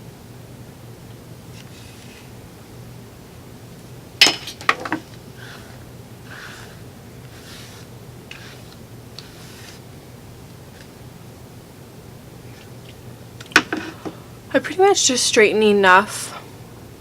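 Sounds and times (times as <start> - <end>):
hair swishing through straightener: 6.3 - 9.8.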